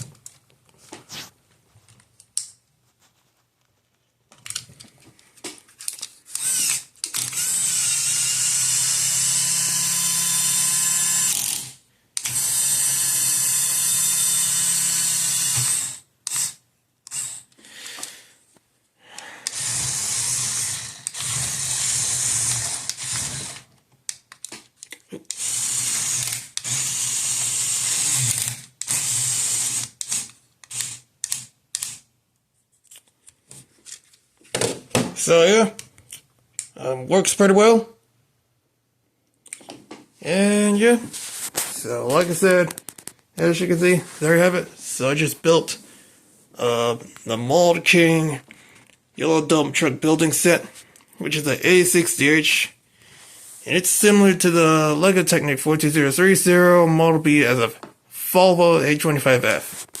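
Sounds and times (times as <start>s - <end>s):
small electric motors whining: 6.3s - 17.5s, 19.4s - 23.7s, 25.3s - 32.0s.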